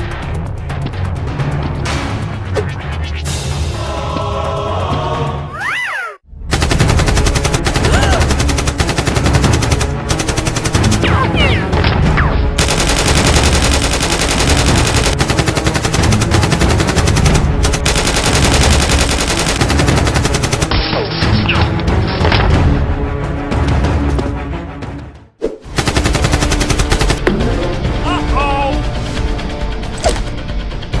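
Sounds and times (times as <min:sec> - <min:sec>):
background music: 0:00.0 - 0:31.0
rapid machine-gun fire: 0:06.5 - 0:11.1, 0:12.6 - 0:20.8, 0:25.7 - 0:27.2.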